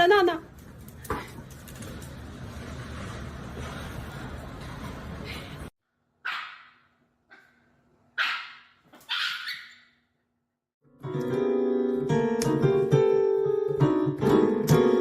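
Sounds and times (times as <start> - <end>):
dog barking: 6.2 - 7.6, 8.2 - 9.9
piano music: 10.8 - 15.0.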